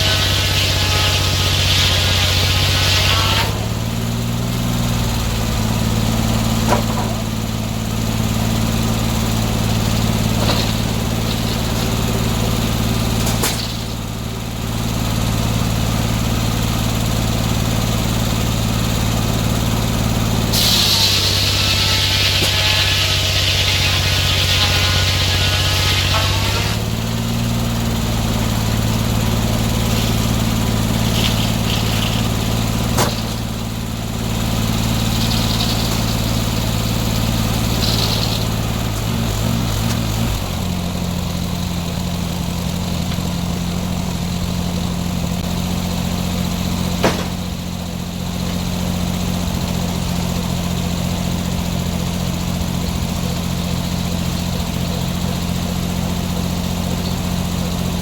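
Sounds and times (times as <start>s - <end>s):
sawmill gas engine running: 0.0s - 58.0s
sharp knocks: 33.0s - 33.4s, 47.0s - 47.5s.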